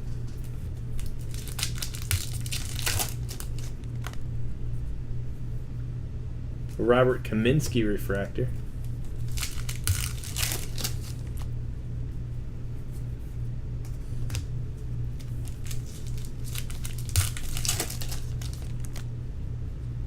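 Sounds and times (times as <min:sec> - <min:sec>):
low hum: 0:00.0 - 0:20.0
card packs crinkling: 0:00.3 - 0:04.2, 0:08.8 - 0:11.5, 0:15.1 - 0:19.0.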